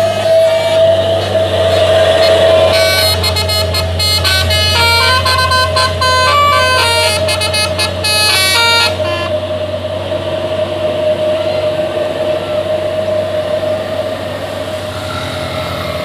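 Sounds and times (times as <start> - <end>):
musical air horn playing a tune: 0.0 - 12.6
steady vehicle drone: 0.0 - 16.0.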